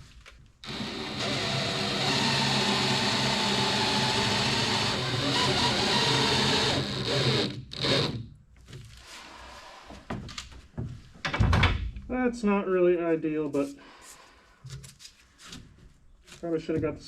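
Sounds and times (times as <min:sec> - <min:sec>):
power tool motor running: 0:00.6 - 0:08.2.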